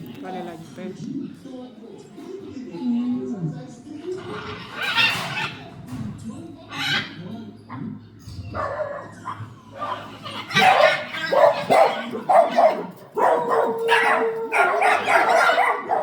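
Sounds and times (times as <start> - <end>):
harsh animal calls: 4.1 - 5.7, 6.7 - 7.3, 8.8 - 16.0.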